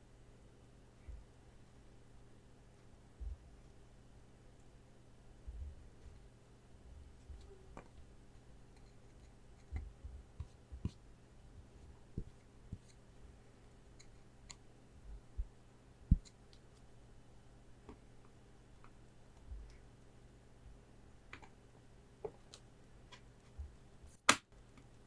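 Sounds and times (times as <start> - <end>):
light clicks and soft taps: 7.0 - 11.0, 11.6 - 13.0, 13.9 - 15.5, 16.1 - 16.9.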